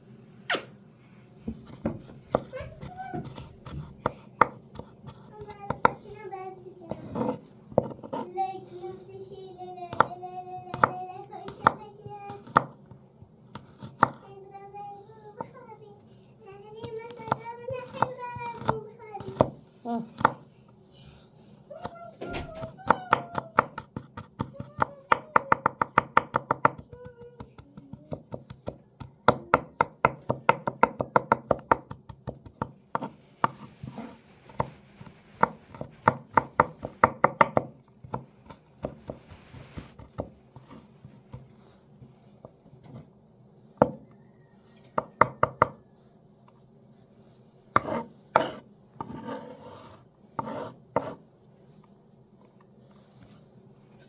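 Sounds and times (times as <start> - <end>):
knife chopping on cutting board: 6.9 - 8.3, 9.9 - 12.8, 13.6 - 14.2, 16.8 - 20.4, 21.8 - 41.5, 43.8 - 44.0, 47.7 - 51.2.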